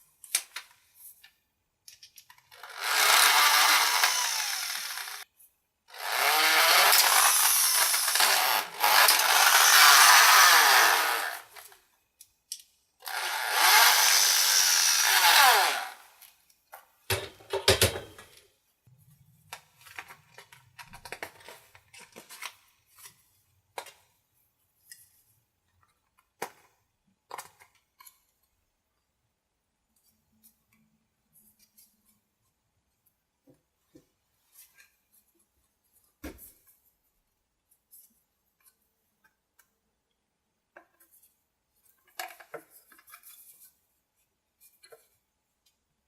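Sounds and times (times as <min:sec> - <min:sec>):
tools and parts clicking and rattling: 0:01.8 - 0:02.6, 0:17.0 - 0:18.5, 0:19.6 - 0:23.1, 0:40.8 - 0:43.7.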